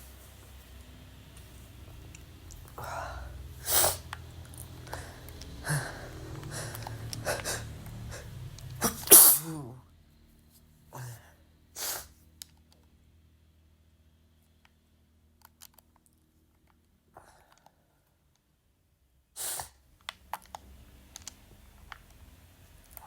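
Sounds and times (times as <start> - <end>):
person sneezing: 3.6 - 4.1, 5.0 - 9.8, 11.8 - 12.1, 19.4 - 19.8.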